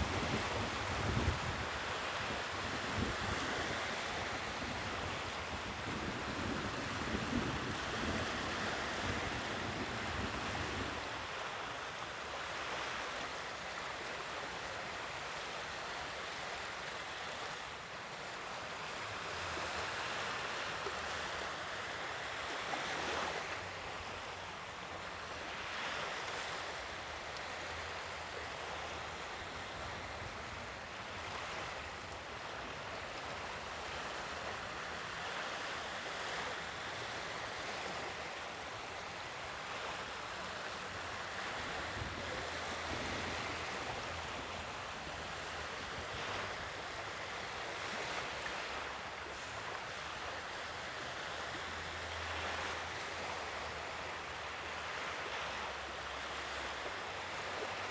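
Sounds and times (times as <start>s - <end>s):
wind rumbling on microphone: 0.0s - 11.2s
sea waves washing in: 18.5s - 57.9s.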